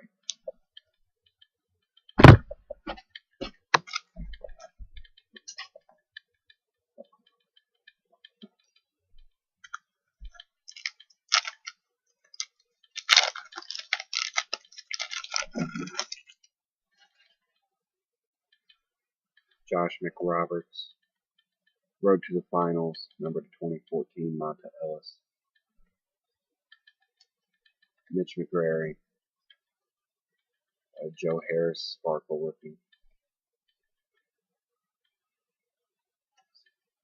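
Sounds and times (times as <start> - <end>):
sharp knock: 2.2 - 2.6
crackly rustling of cards: 2.8 - 6.0, 7.1 - 17.7
cards clicking and flicking: 3.4 - 4.2.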